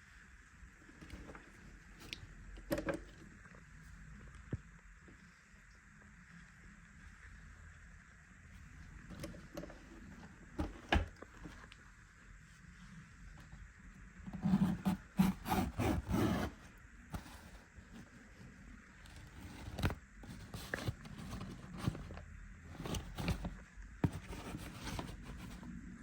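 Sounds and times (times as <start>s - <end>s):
scraping and rustling handling: 8.6s - 12.9s, 14.3s - 25.8s.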